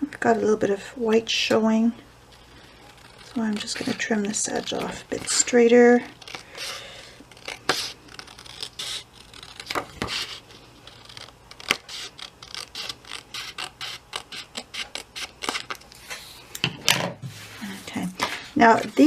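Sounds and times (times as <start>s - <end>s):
scissors snipping paper: 7.3s - 15.8s.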